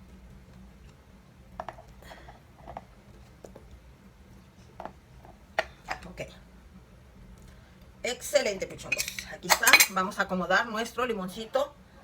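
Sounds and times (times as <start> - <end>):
kitchen items clicking: 8.9 - 10.0.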